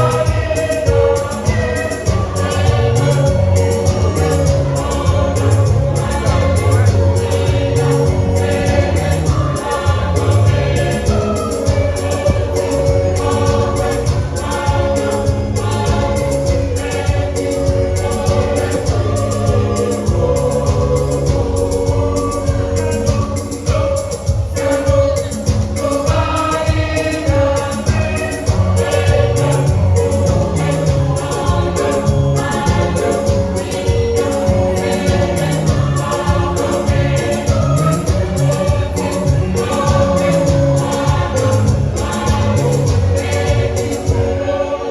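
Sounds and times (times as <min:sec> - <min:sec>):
low sustained bass notes: 0:00.0 - 0:00.3, 0:02.2 - 0:23.4
steady percussive beat: 0:00.0 - 0:44.6
children's choir singing gospel: 0:00.0 - 0:44.9.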